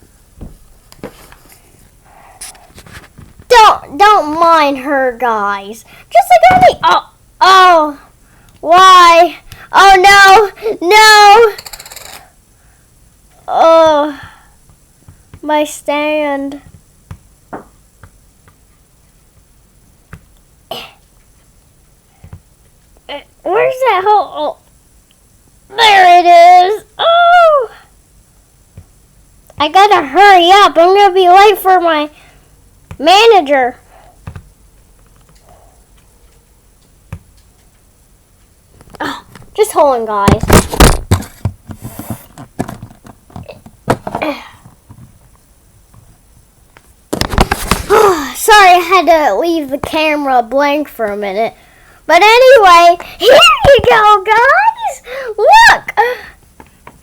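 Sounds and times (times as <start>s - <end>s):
plastic toy pieces knocking: 11.5s - 12.3s, 40.3s - 44.2s
objects being handled clicking: 11.6s - 12.3s.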